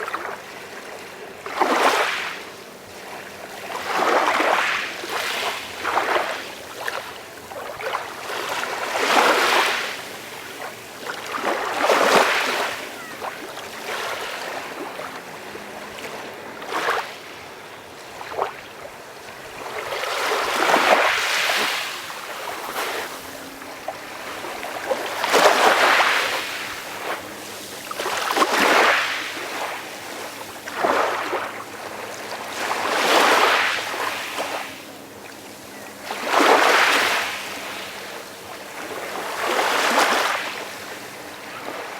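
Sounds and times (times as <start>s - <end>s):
calm sea waves washing in: 0.0s - 41.9s.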